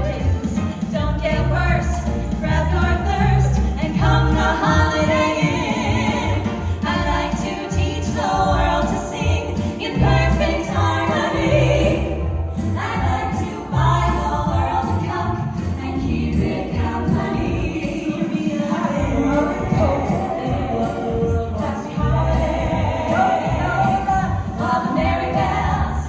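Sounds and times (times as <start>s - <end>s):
group singing a christmas song: 0.0s - 26.0s
vocal group singing in harmony: 0.0s - 26.0s
bass beat: 19.0s - 26.0s.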